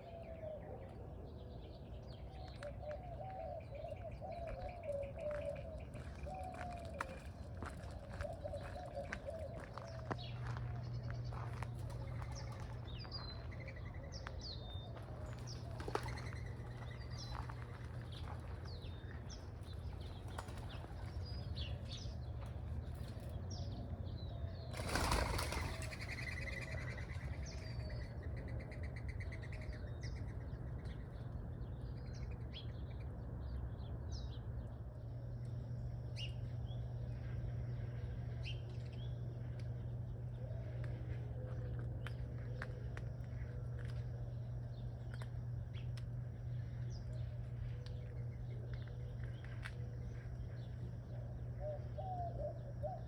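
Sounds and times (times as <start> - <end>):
steady low hum: 0.0 - 53.0
wild birds chirping: 0.0 - 53.0
bird wings flapping: 24.8 - 26.1.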